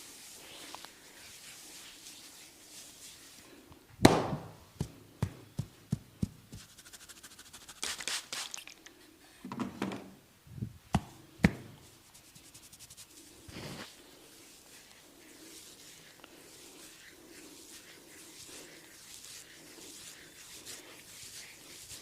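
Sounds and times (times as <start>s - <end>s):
hands rubbing hair and skin: 0.0s - 8.8s, 10.9s - 22.0s
hands striking head: 4.0s - 6.7s, 10.9s - 11.8s.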